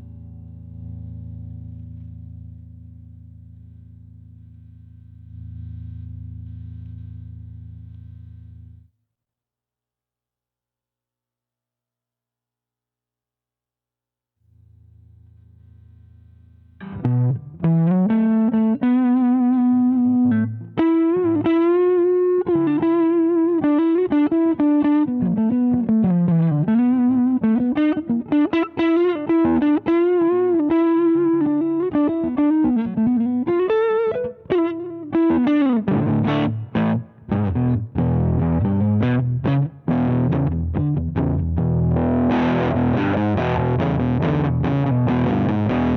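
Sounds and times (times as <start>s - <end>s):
faint amp hum: 0.0s - 8.9s
overdriven electric guitar: 5.3s - 8.7s, 16.8s - 45.9s.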